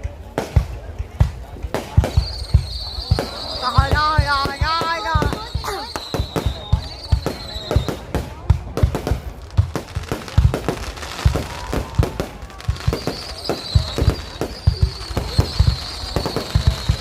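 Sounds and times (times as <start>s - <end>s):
fireworks bangs and booms: 0.0s - 17.0s
high steady whistle: 2.0s - 8.1s, 13.0s - 17.0s.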